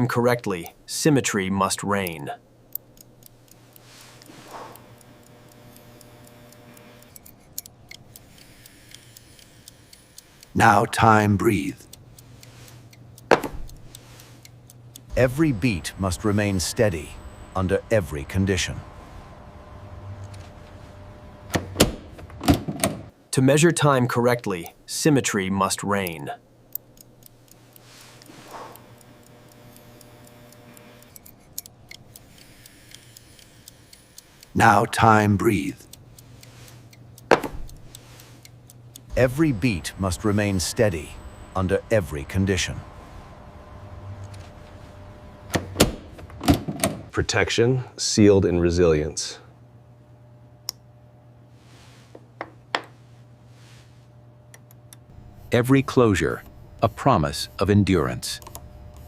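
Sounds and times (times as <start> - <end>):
mechanical watch ticking: 0.0 - 19.0, 24.3 - 43.9
low steady hum: 0.0 - 59.0
small metallic clicks: 2.0 - 15.1, 26.0 - 39.1.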